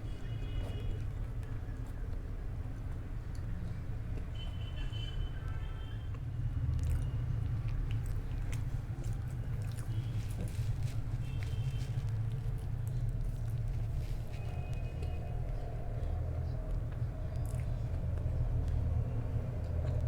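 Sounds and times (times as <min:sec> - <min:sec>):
person chewing food: 0:06.6 - 0:20.0.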